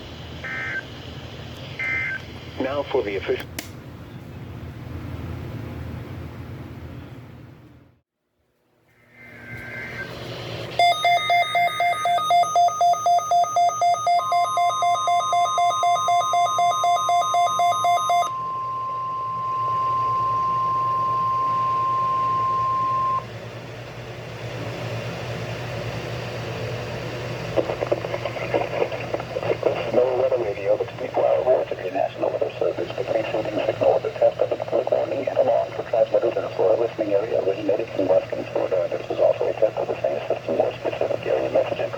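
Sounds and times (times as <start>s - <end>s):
radio hiss: 2.5s - 3.4s, 27.5s - 41.9s
steady warning alarm tone: 9.3s - 23.3s
weather radio alarm beeps: 10.8s - 23.2s.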